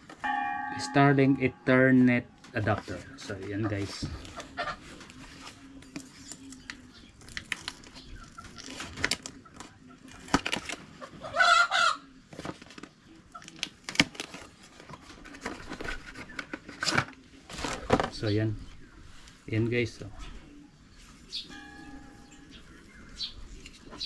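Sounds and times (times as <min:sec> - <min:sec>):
packaging clicks and rustles: 0:05.0 - 0:11.0, 0:12.3 - 0:18.2.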